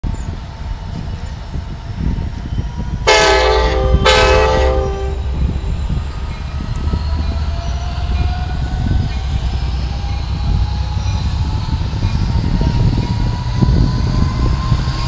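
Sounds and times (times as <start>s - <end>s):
diesel locomotive engine rumbling: 0.0s - 15.0s
train horn blasts: 3.0s - 5.5s.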